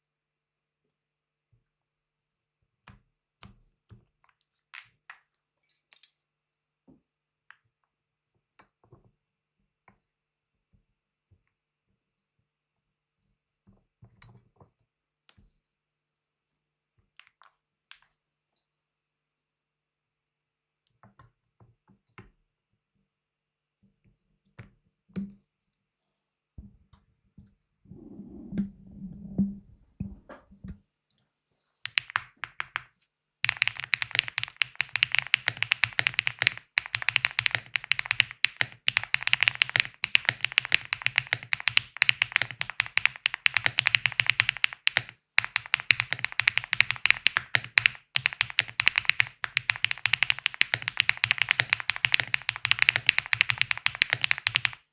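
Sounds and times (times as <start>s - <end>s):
mechanical keyboard typing: 31.9s - 54.9s.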